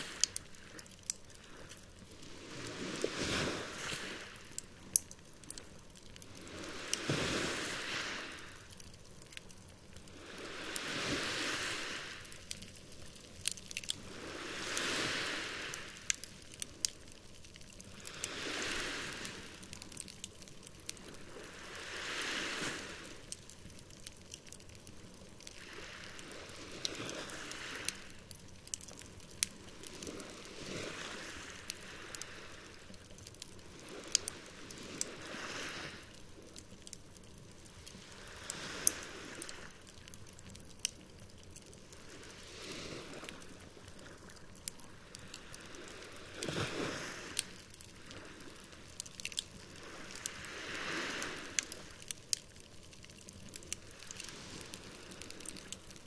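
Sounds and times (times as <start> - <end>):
campfire crackling and popping: 0.0 - 56.0
sea waves washing onto shore: 0.0 - 56.0.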